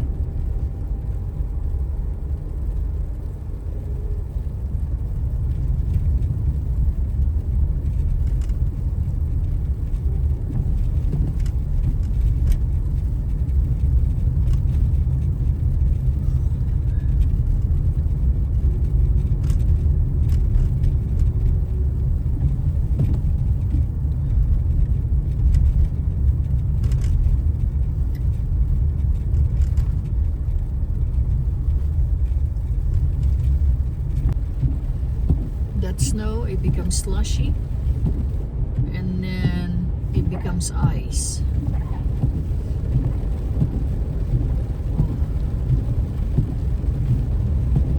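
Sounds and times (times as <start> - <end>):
car interior road rumble: 0.0 - 47.9
faint ticks: 7.8 - 35.6.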